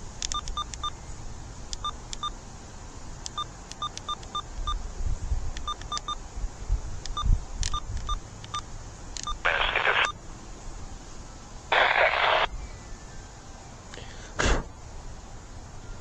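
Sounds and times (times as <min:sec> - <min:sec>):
low radio rumble and hiss: 0:00.0 - 0:16.0
sharp clicks: 0:00.2 - 0:00.9, 0:05.5 - 0:06.2, 0:07.0 - 0:10.2.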